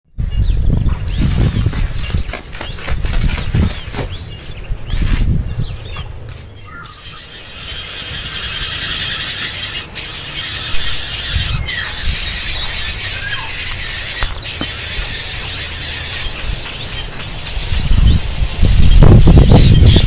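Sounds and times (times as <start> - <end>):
high bird chirps: 0.1 - 20.0
steady high hiss: 4.2 - 20.0.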